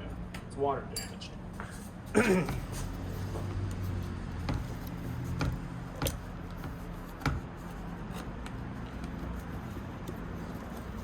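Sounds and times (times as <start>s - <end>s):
clicks and taps of hands working: 3.4s - 7.6s.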